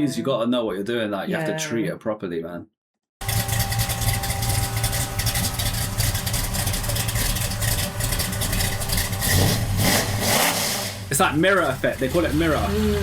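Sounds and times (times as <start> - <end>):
car engine idling: 3.2 - 13.0.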